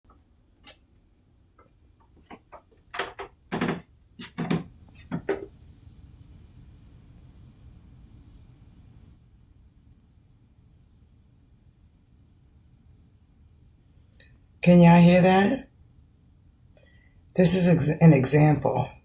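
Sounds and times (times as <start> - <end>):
knocks and clatters: 2.1 - 5.4
high-pitched electronic tone: 3.5 - 9.2.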